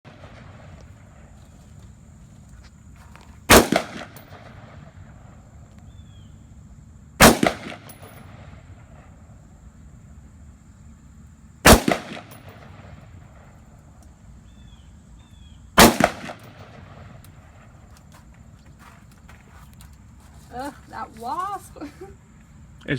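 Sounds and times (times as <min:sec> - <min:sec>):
rifle shots with echo: 0:00.1 - 0:01.3, 0:03.5 - 0:05.1, 0:07.2 - 0:09.0, 0:11.6 - 0:13.5, 0:15.8 - 0:17.7.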